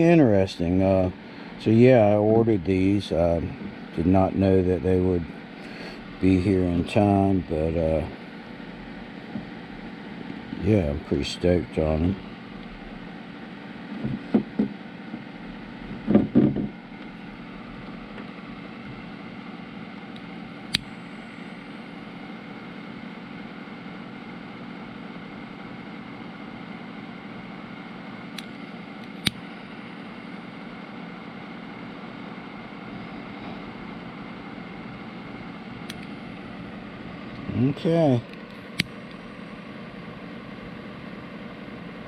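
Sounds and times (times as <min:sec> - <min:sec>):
heat gun fan humming: 0:00.0 - 0:42.0.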